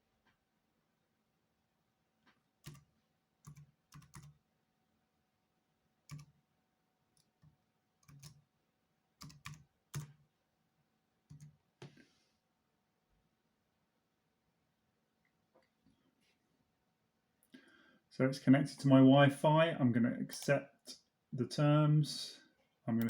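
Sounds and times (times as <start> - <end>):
laptop keyboard keystrokes: 2.6 - 4.4, 6.1 - 6.4, 7.2 - 8.4, 9.2 - 10.2, 11.3 - 11.6.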